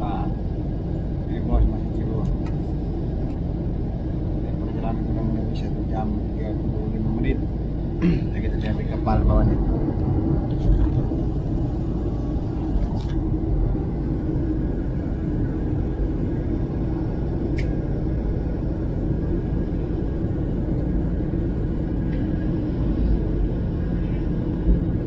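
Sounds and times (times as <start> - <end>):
airliner cabin rumble: 0.0 - 25.0.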